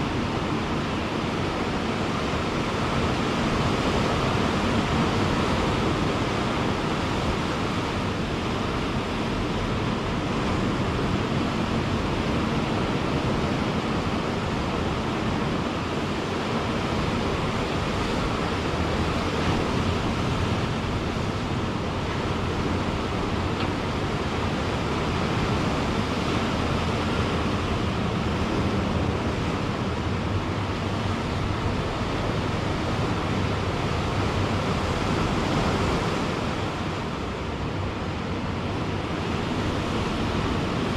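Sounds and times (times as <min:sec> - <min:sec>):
ocean surf washing ashore: 0:00.0 - 0:40.9.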